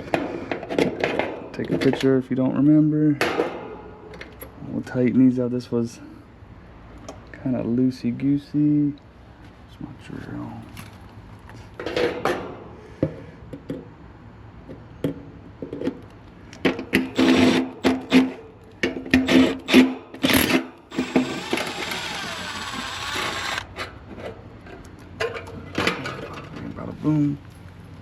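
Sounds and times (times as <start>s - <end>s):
cordless drill driving screws: 17.2s - 18.3s, 19.3s - 23.7s.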